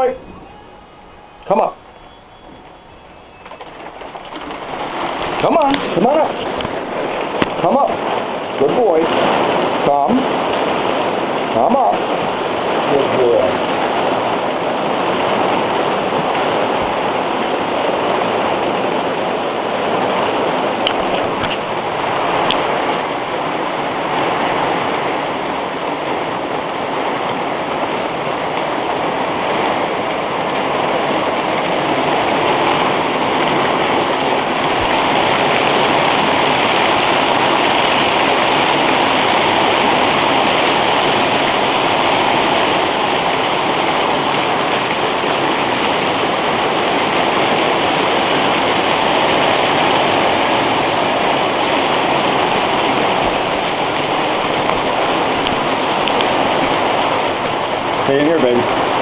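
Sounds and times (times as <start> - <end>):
hail falling on roof: 3.4 - 11.0.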